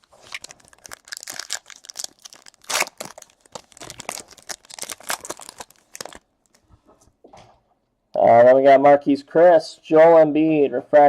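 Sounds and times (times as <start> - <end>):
cards crackling: 0.0 - 6.6
wrapper crinkling and tearing: 0.0 - 6.6.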